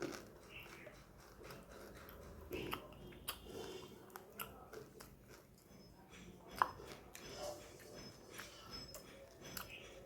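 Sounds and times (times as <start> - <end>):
food crunching clicks: 0.0 - 3.4, 4.1 - 5.7
person chewing and biting food: 0.0 - 10.0.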